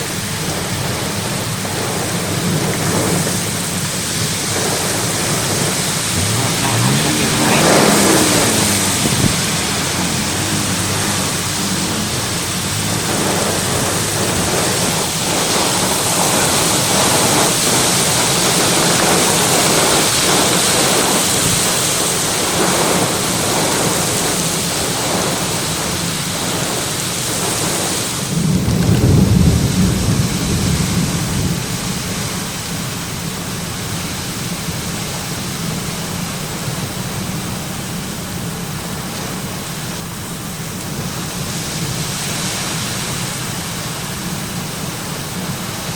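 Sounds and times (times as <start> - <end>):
heavy rain pouring: 0.0 - 45.9
strong wind: 0.2 - 33.2
thunder rumble: 0.4 - 32.5.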